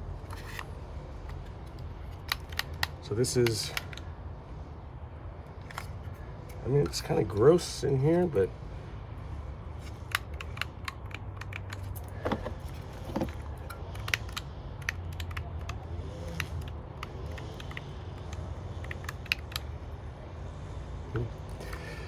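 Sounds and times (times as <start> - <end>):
plastic switch clicks and rattles: 1.3 - 4.0, 9.8 - 19.8.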